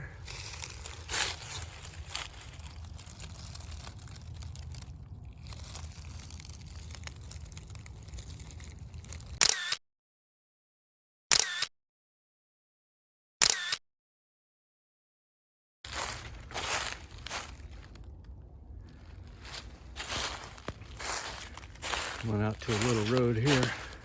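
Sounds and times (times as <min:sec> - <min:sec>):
faint rustling and handling noise: 0:00.1 - 0:09.4, 0:15.9 - 0:24.0
camera shutter click: 0:09.4 - 0:09.8, 0:11.3 - 0:11.7, 0:13.4 - 0:13.8.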